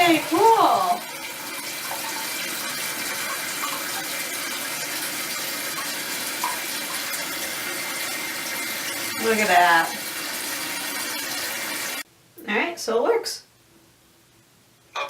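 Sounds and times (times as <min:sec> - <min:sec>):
water running into toilet tank: 0:00.0 - 0:12.0.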